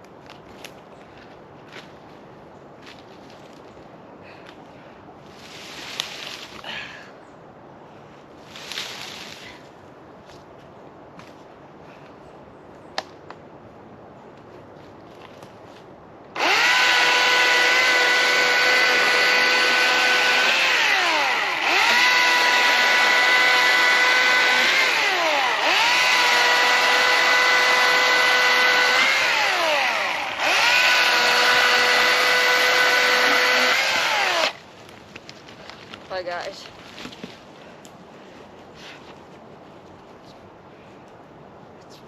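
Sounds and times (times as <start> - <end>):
chainsaw cutting into wood: 16.4 - 34.6.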